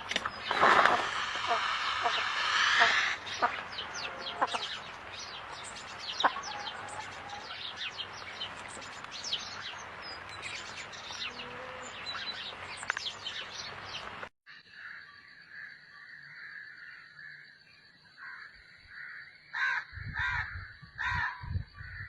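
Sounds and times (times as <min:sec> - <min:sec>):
small birds chirping: 0:00.0 - 0:18.9.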